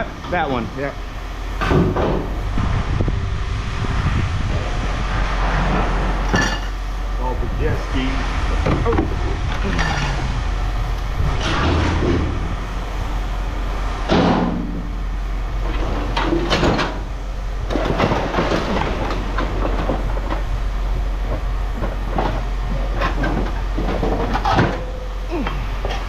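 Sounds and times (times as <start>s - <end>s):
steady low rumble: 0.0s - 26.0s
scrap metal clanking: 11.2s - 12.5s.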